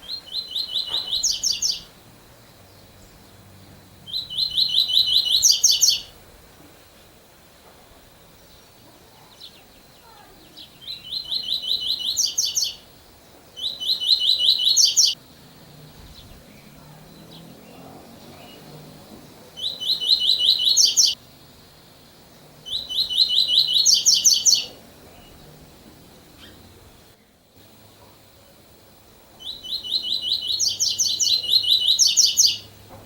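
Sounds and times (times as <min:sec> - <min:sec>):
bird singing fast repeated notes: 0:00.0 - 0:01.9, 0:02.5 - 0:06.2, 0:09.4 - 0:13.0, 0:13.6 - 0:21.8, 0:22.6 - 0:25.4, 0:29.4 - 0:32.8.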